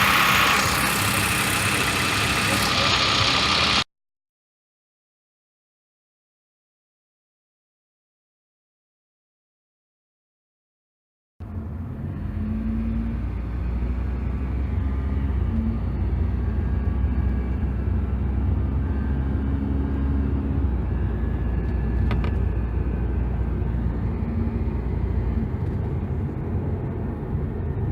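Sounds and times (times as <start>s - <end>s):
car engine rumbling: 0.0s - 3.9s, 11.4s - 27.9s
faint engine whine: 0.0s - 3.9s, 11.4s - 27.9s.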